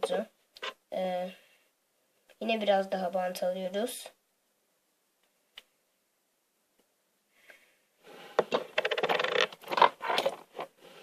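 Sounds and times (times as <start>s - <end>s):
tape tearing off roll: 8.5s - 10.6s.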